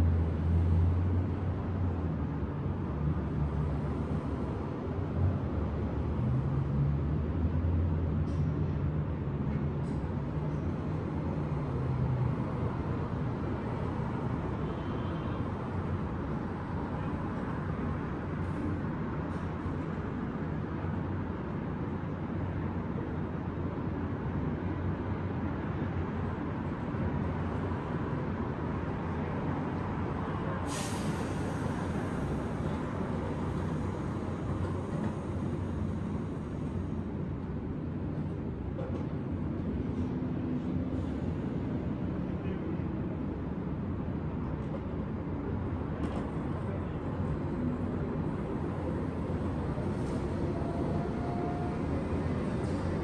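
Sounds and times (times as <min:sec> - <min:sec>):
city traffic rumble: 0:00.0 - 0:53.0
short sharp hiss: 0:30.7 - 0:31.7.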